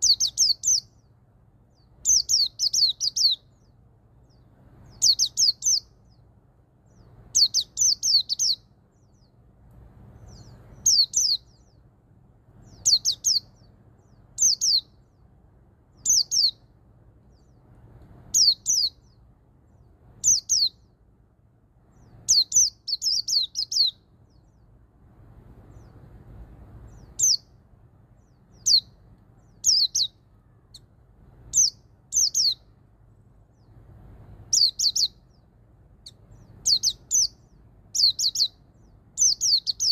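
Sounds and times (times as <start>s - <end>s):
bird singing high sharp notes: 0.0s - 1.0s, 2.0s - 3.6s, 4.8s - 5.9s, 6.9s - 9.3s, 10.3s - 11.8s, 12.6s - 15.0s, 16.0s - 16.6s, 18.3s - 19.2s, 20.2s - 20.8s, 22.0s - 24.1s, 26.9s - 27.5s, 28.3s - 30.2s, 31.5s - 32.7s, 34.5s - 35.4s, 36.1s - 39.9s.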